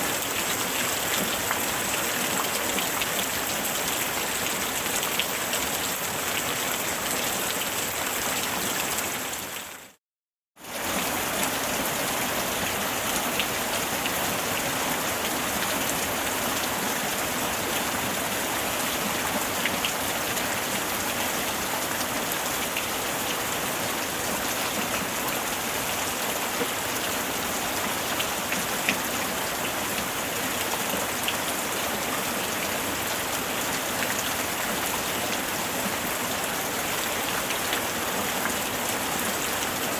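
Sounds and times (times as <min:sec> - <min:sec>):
steady rainfall: 0:00.0 - 0:10.0, 0:10.6 - 0:39.9.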